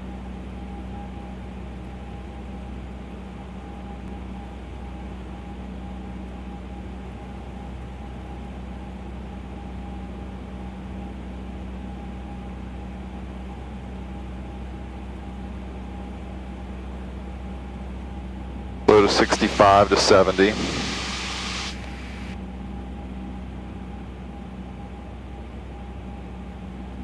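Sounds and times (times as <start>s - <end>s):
light aircraft engine drone: 18.9s - 22.4s.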